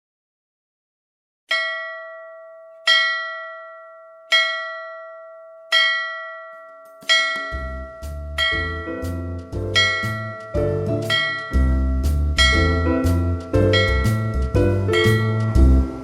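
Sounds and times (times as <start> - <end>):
bell chime ringing: 1.5 - 15.6
music with bass and chords: 7.4 - 16.0.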